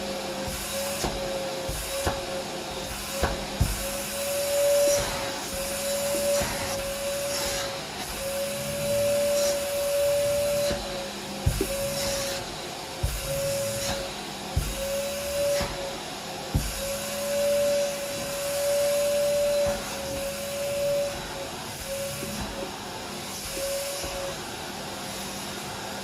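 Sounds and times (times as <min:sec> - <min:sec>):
vacuum cleaner running: 0:00.0 - 0:26.0.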